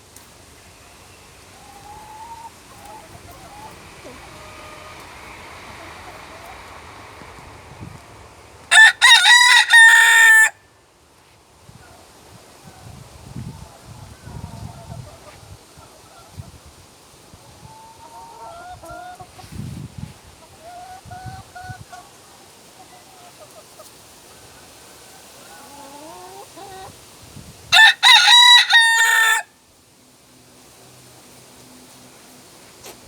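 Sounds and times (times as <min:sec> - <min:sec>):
faint rooster calls: 0:01.5 - 0:08.1, 0:08.7 - 0:10.7, 0:24.3 - 0:27.0, 0:27.7 - 0:29.6
rooster crowing: 0:02.0 - 0:10.7, 0:27.7 - 0:29.6.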